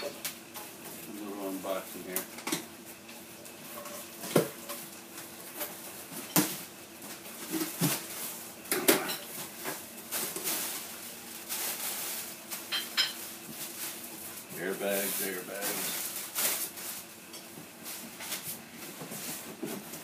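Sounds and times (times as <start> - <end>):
cardboard packing rustling: 9.3 - 20.0.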